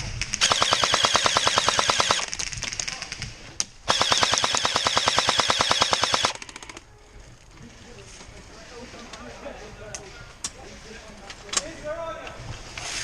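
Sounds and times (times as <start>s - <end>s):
airsoft gun rapid firing: 0.4s - 3.1s, 3.9s - 6.8s.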